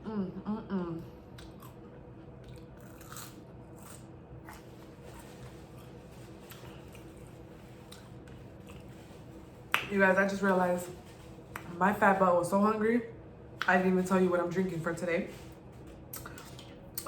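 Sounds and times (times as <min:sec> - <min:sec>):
person chewing food: 0:01.4 - 0:09.4, 0:15.8 - 0:17.0.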